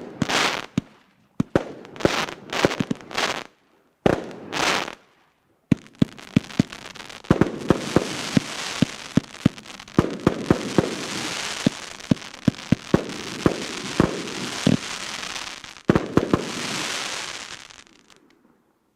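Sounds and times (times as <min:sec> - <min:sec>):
crackling hiss of bursting shells: 0:05.7 - 0:18.4
firework launch pops: 0:07.3 - 0:18.2.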